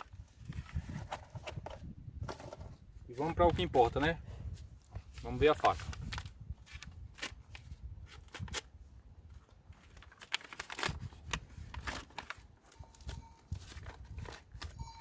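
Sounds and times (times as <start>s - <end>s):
packaging crinkling and rustling: 9.7s - 14.8s.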